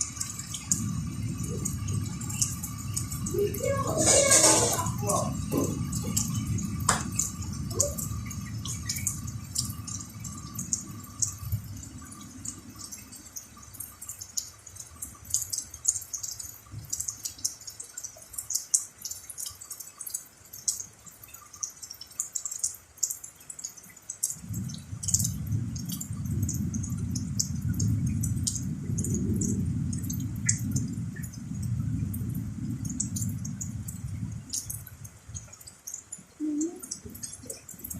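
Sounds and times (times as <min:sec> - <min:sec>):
low rumble: 0:00.0 - 0:13.8, 0:24.4 - 0:35.4
rain dripping: 0:00.0 - 0:37.9.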